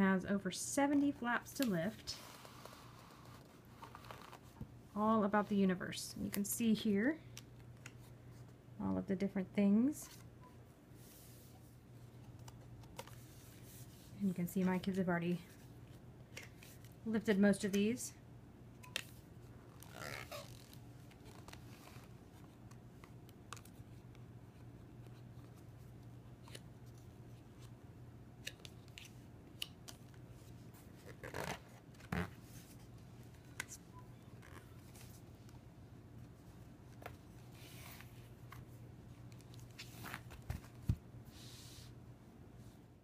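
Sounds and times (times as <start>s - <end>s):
book pages and flaps rustling: 1.0s - 4.7s, 19.7s - 27.8s, 28.4s - 35.6s, 36.2s - 41.5s.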